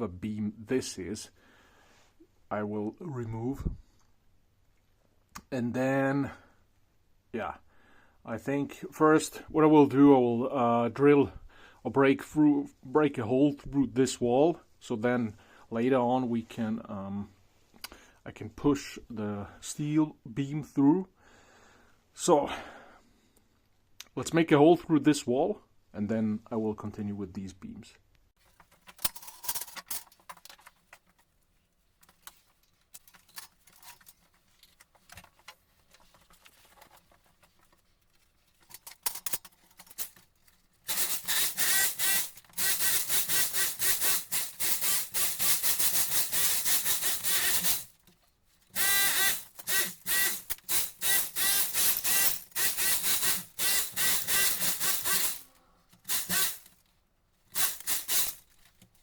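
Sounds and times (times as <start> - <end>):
tool cutting through wall: 40.9 - 48.0, 48.7 - 56.8, 57.5 - 58.5.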